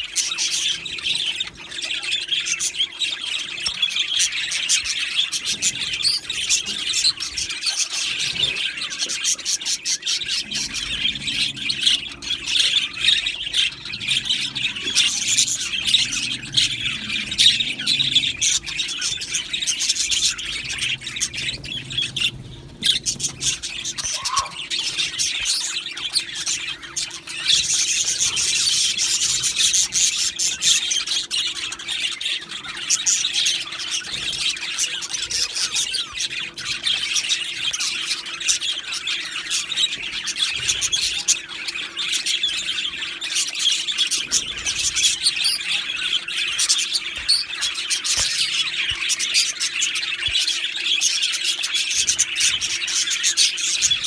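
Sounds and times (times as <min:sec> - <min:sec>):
budgerigars chattering: 0:00.0 - 0:54.0.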